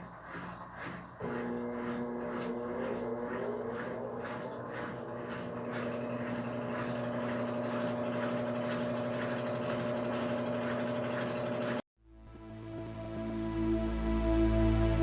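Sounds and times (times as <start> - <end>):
washing machine humming: 0.0 - 11.8.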